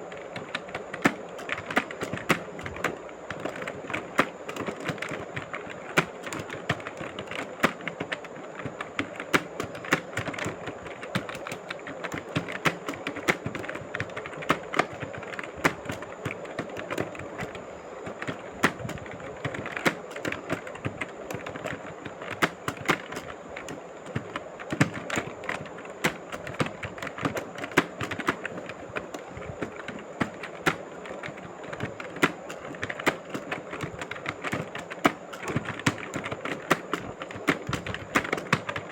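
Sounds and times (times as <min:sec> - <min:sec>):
steady background noise: 0:00.0 - 0:38.9.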